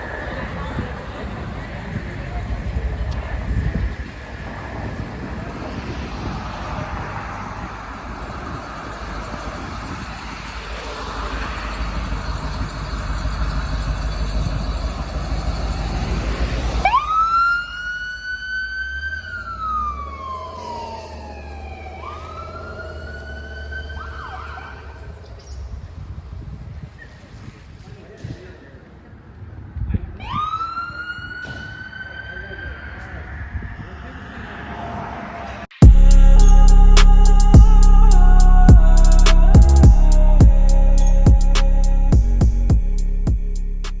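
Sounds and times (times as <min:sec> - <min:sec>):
emergency vehicle siren wailing: 0:00.0 - 0:25.9, 0:30.1 - 0:35.3
engine and road rumble: 0:00.0 - 0:44.0.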